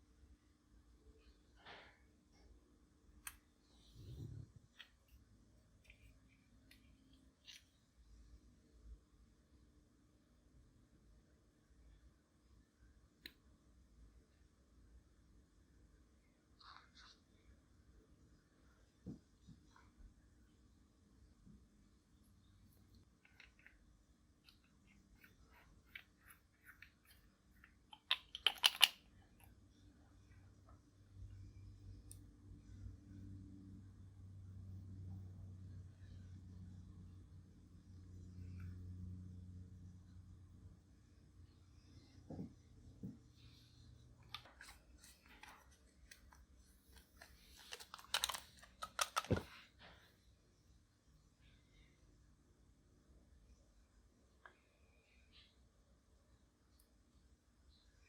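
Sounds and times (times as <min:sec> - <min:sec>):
makeup clicks and crunchy crackles: 0:22.7 - 0:29.6, 0:44.2 - 0:49.6.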